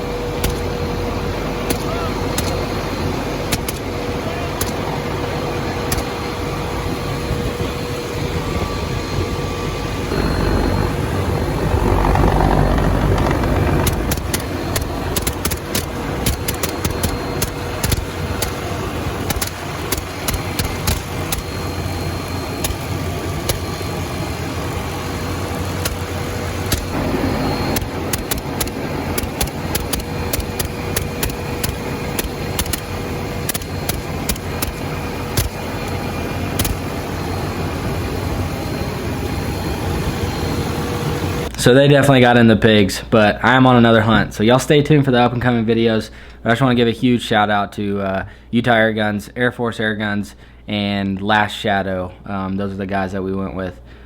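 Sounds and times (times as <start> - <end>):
helicopter drone and whine: 0.0 - 41.5
sharp clicks and cracks: 0.4 - 0.7, 1.7 - 2.6, 3.5 - 3.9, 10.1 - 18.6, 19.3 - 21.5, 22.6 - 22.9, 25.8 - 27.0, 27.8 - 35.6, 36.6 - 36.8.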